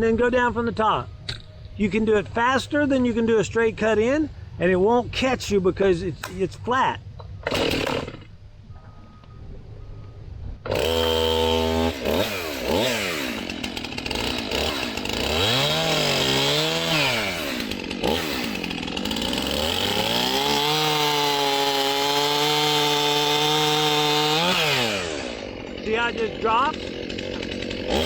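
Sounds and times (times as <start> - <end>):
chainsaw cutting tree limb: 7.3 - 8.4, 10.6 - 28.0
chainsaw revving: 7.4 - 8.3, 10.7 - 28.0.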